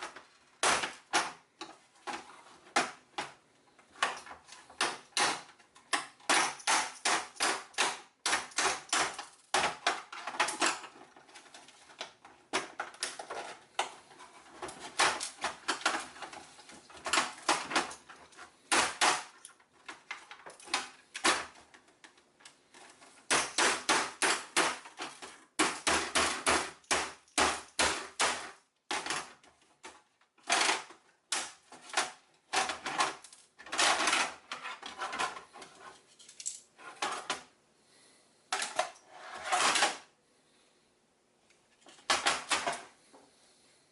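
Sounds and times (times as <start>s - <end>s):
hammer striking plastic casing: 0.0s - 1.7s, 4.0s - 10.7s, 18.7s - 19.4s, 23.3s - 29.3s.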